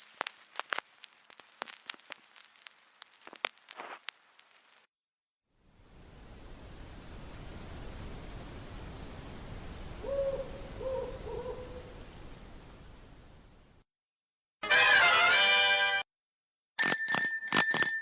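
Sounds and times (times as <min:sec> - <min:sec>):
high cricket trill: 0:05.6 - 0:13.8
owl hooting: 0:10.0 - 0:12.0.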